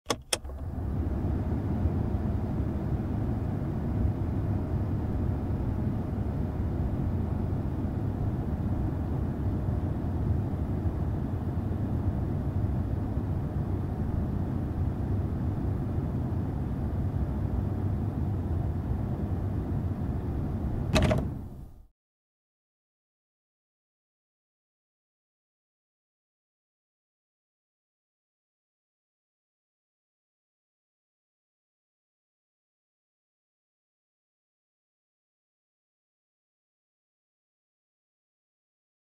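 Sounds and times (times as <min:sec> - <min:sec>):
air vents blowing: 0:00.1 - 0:21.8.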